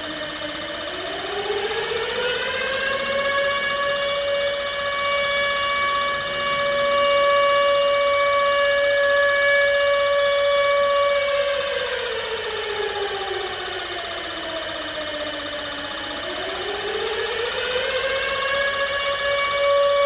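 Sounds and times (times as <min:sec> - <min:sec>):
civil defence siren wailing: 0:00.0 - 0:20.0.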